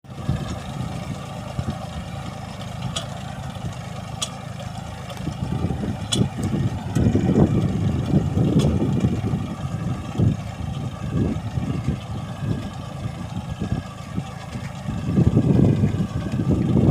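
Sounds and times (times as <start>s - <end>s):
farm machine engine rumbling: 0.0s - 16.9s
sharp metallic clicks: 4.1s - 5.4s, 6.0s - 7.2s.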